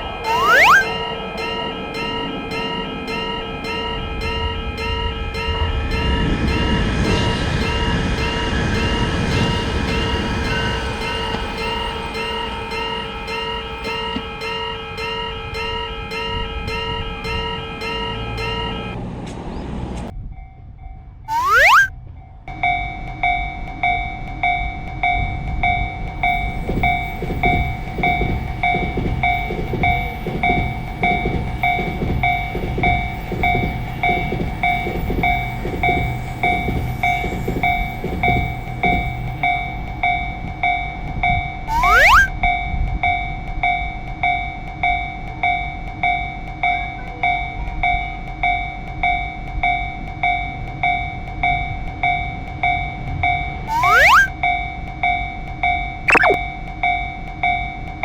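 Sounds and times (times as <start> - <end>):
rising sweep: 0.0 - 1.0, 21.3 - 21.9, 41.7 - 42.3, 53.7 - 54.3
level-crossing warning bell: 0.0 - 19.0
train wheel clatter: 25.2 - 40.9.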